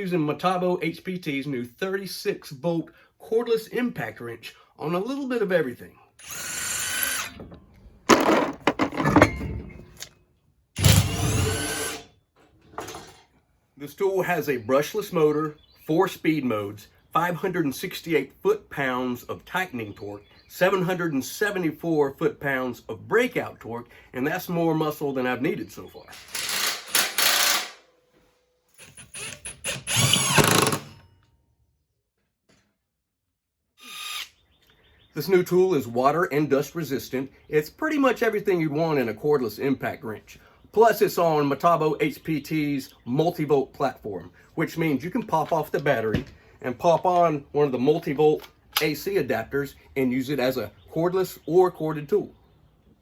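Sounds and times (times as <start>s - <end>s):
impact wrench bursts: 6.2s - 7.4s, 10.8s - 12.1s, 26.2s - 27.8s, 28.8s - 31.0s.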